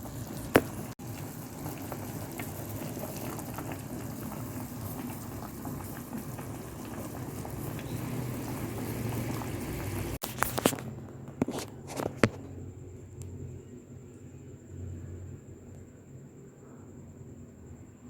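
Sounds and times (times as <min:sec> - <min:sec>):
soup boiling and bubbling: 0:00.0 - 0:12.6.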